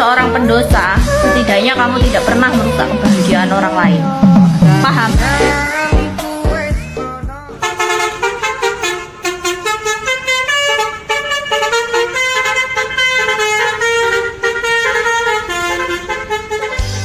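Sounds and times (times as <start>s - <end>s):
multi-tone bus air horn melody: 0.0s - 17.0s.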